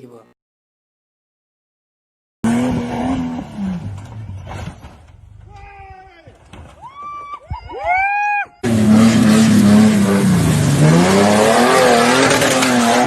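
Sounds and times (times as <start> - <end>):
vehicle engine revving: 2.4 - 5.5, 8.6 - 13.0.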